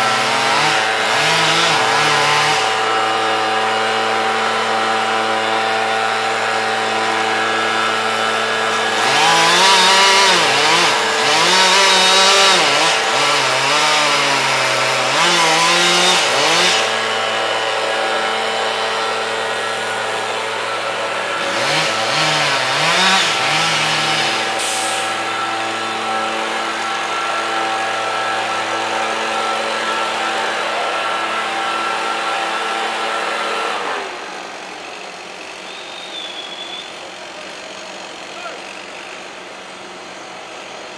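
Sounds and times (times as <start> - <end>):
chainsaw cutting wood: 0.0 - 40.9
steady engine drone: 0.0 - 40.9.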